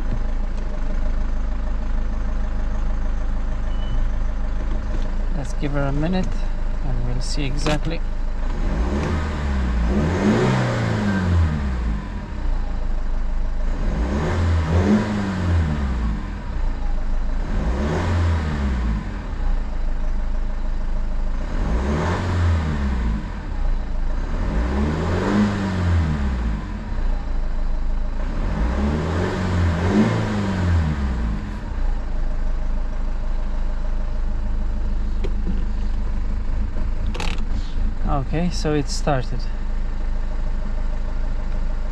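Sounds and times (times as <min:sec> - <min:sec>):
diesel engine idling unevenly: 0:00.0 - 0:08.5, 0:11.2 - 0:13.8, 0:15.6 - 0:17.6, 0:18.8 - 0:21.6, 0:26.0 - 0:28.6, 0:30.7 - 0:41.9.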